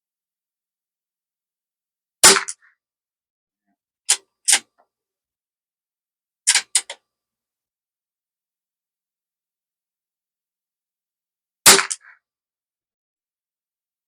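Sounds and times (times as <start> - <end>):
rifle shot: 2.2 - 2.6, 11.7 - 12.1
quick metallic clicks: 6.5 - 7.0.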